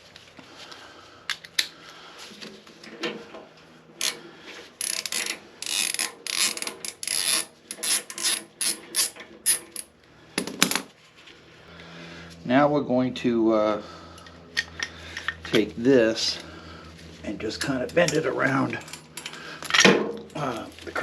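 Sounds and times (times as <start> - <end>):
ratchet wrench rasping: 4.8 - 9.9.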